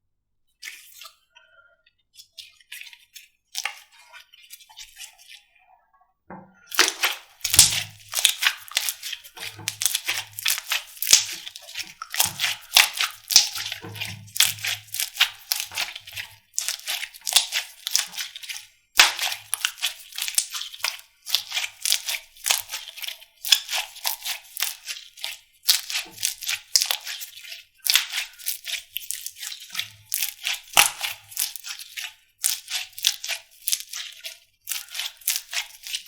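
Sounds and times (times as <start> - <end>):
slime crackling and popping: 6.7 - 18.4, 19.0 - 22.8, 25.7 - 27.2, 27.8 - 34.0, 34.7 - 36.0.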